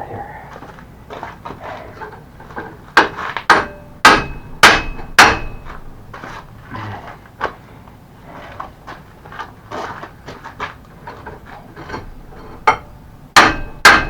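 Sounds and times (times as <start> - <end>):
hammer striking metal: 3.0 - 6.3, 12.6 - 14.0.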